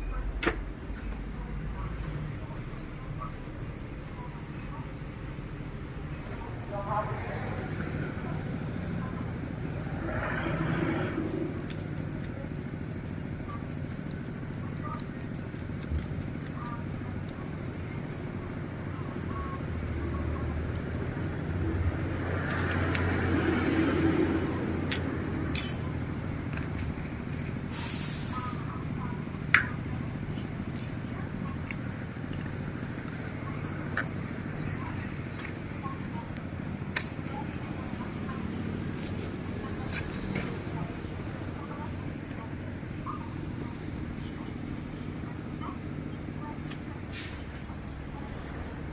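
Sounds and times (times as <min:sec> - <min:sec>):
metal clicks and clinks: 0:11.5 - 0:17.4, 0:22.4 - 0:23.3, 0:24.8 - 0:26.8, 0:30.7 - 0:33.2
brief hiss: 0:27.7 - 0:28.4.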